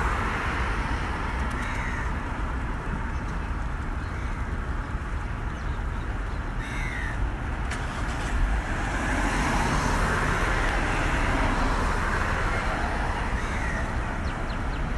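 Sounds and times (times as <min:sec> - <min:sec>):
traffic noise: 0:00.0 - 0:14.9
vehicle passing: 0:07.7 - 0:14.9.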